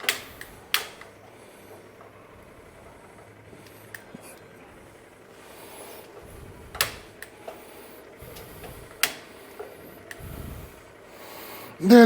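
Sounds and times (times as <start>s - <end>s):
gas stove igniter clicks: 0.0s - 1.1s, 6.7s - 7.6s, 8.3s - 10.4s.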